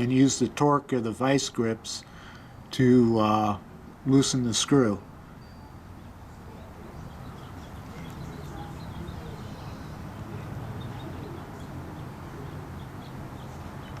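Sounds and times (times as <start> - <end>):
faint high chirps: 5.3 - 14.0.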